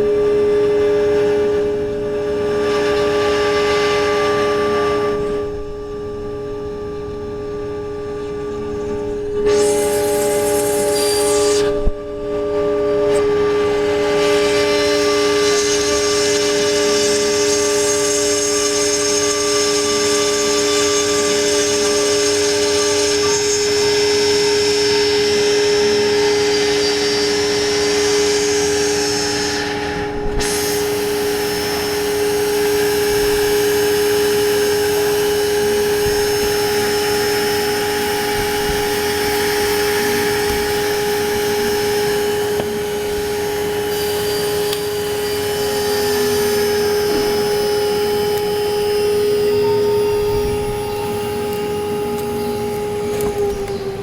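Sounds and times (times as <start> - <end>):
router spindle whining: 0.0 - 54.0
bit cutting acrylic: 30.4 - 54.0.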